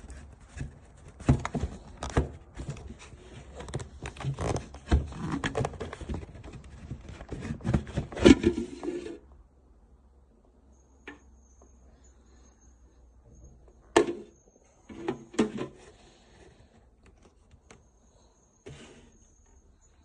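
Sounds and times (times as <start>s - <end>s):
handling clicks and scraping: 0.0s - 9.2s
faint high steady tone: 10.2s - 15.3s, 16.8s - 20.0s.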